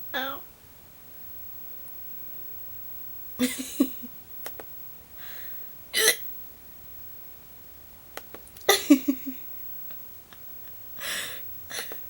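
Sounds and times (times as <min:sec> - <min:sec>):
person hiccuping: 0:06.0 - 0:06.3.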